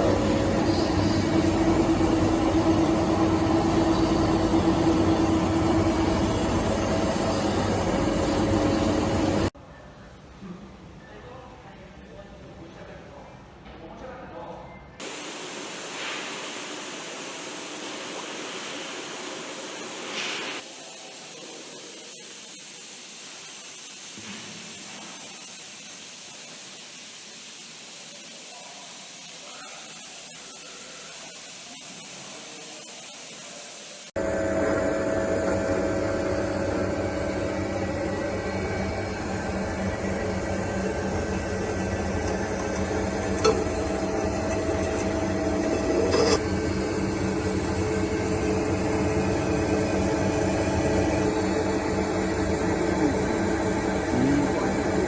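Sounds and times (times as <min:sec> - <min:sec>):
thread rolling machine humming: 0:00.0 - 0:09.6, 0:34.2 - 0:55.0.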